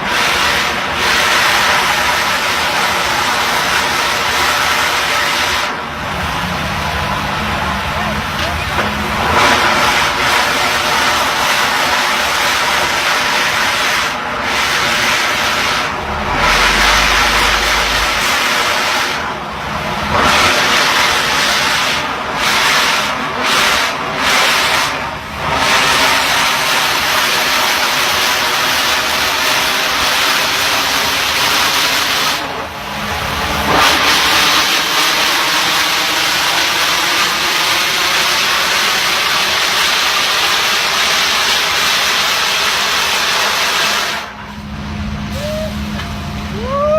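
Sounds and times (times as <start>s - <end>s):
drilling rig machinery hissing: 0.0s - 46.9s
engine drone: 0.0s - 46.9s
low rumble: 15.4s - 20.2s.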